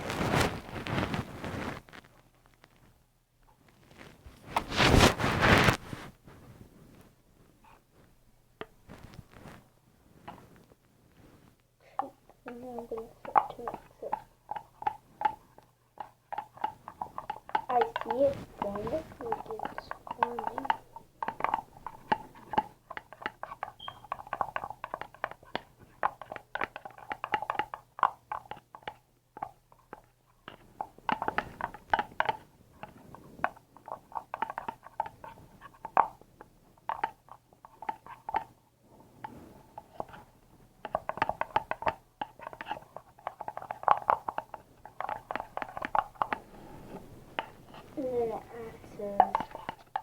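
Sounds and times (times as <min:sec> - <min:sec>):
slime clicking and scraping: 0:12.0 - 0:38.6, 0:39.2 - 0:50.0.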